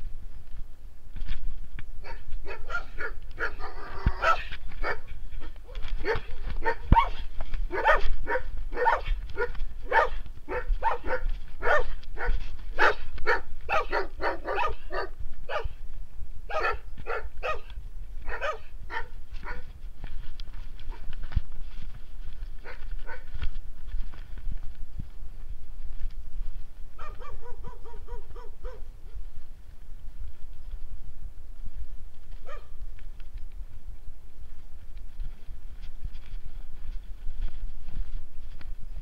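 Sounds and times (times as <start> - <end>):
dogs barking: 2.0 - 15.8, 16.5 - 19.7, 22.6 - 23.3, 27.0 - 28.9, 32.4 - 32.8.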